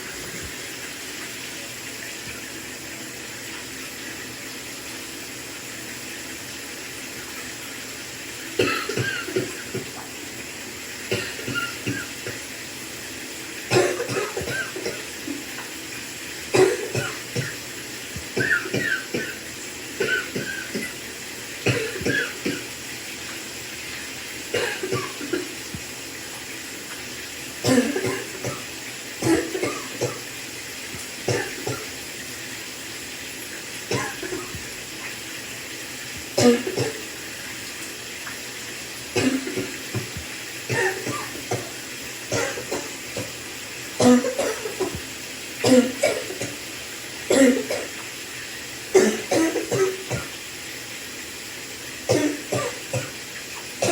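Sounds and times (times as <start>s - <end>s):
running shower hiss: 0.0s - 53.9s
person coughing: 8.6s - 9.6s, 11.1s - 12.4s, 13.7s - 15.0s, 16.6s - 17.6s, 18.4s - 19.4s, 21.7s - 22.7s, 24.6s - 25.5s, 27.6s - 28.6s, 29.2s - 30.2s, 31.3s - 31.8s, 33.9s - 34.6s, 36.3s - 37.0s, 39.2s - 41.7s, 42.3s - 43.3s, 44.0s - 45.0s, 45.6s - 46.6s, 47.3s - 47.9s, 49.0s - 50.3s, 52.1s - 53.1s.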